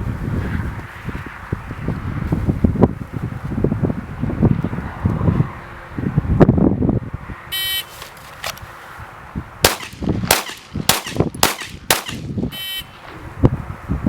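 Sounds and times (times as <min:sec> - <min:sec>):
shot timer beep: 0:07.6 - 0:07.9, 0:12.5 - 0:12.9
pistol shots: 0:09.6 - 0:12.4.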